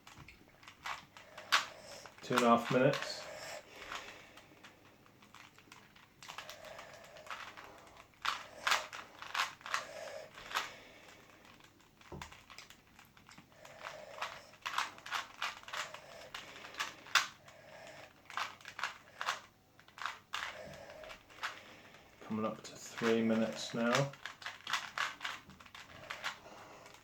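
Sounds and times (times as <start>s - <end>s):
plastic puzzle cube clicking: 0.0s - 22.0s, 22.8s - 27.0s.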